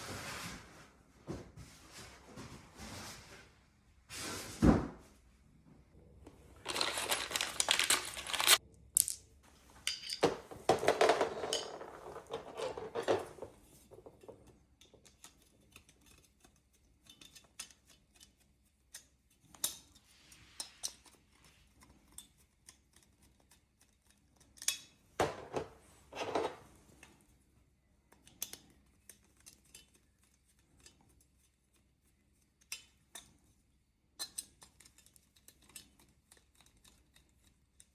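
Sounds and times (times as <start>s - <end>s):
rustling and scraping: 0.0s - 5.2s, 6.3s - 14.6s, 25.2s - 27.4s.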